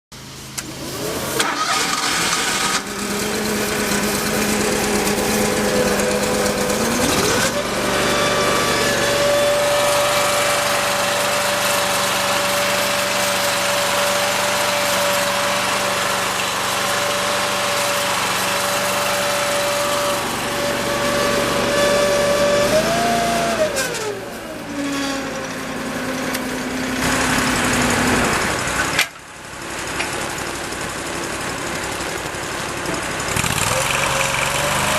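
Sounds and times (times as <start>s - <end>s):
small engine idling and revving: 0.2s - 34.9s.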